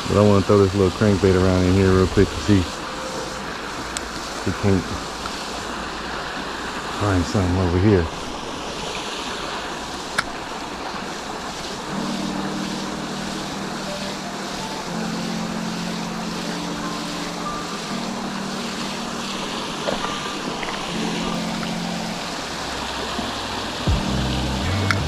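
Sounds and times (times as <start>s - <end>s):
rushing river water: 0.0s - 25.0s
low hum: 11.9s - 25.0s.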